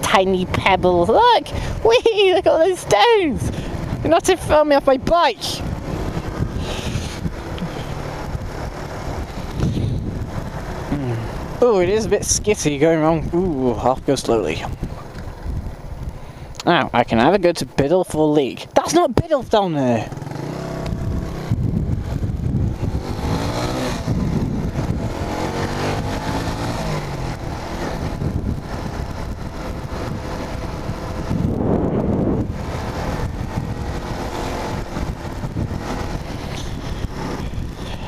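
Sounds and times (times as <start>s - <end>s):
motorcycle engine revving: 2.4s - 12.2s, 20.0s - 38.0s.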